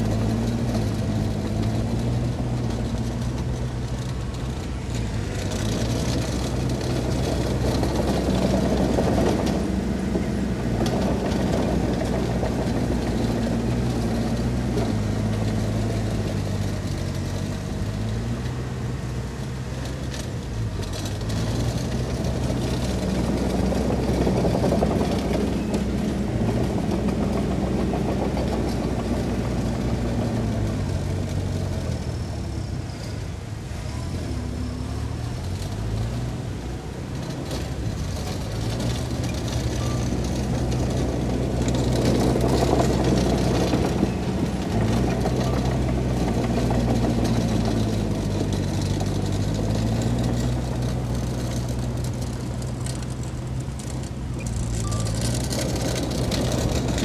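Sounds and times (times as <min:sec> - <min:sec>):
heavy diesel engine revving: 0:00.0 - 0:57.0.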